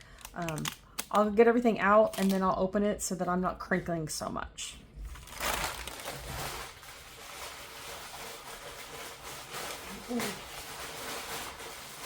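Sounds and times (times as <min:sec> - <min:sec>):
plastic bags rustling and crinkling: 0:05.0 - 0:12.0.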